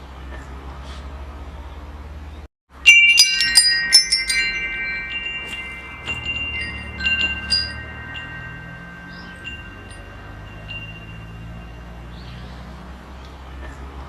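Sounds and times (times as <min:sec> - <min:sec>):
wind chimes ringing: 0:02.7 - 0:12.8
low steady rumble: 0:02.8 - 0:12.2.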